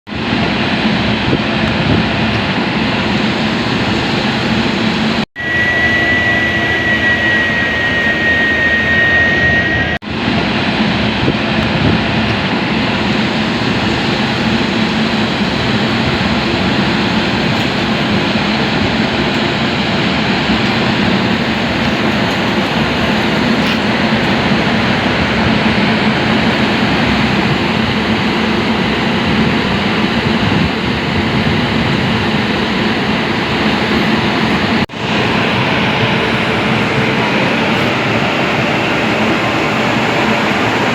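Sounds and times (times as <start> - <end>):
locomotive humming: 0.3 - 40.9.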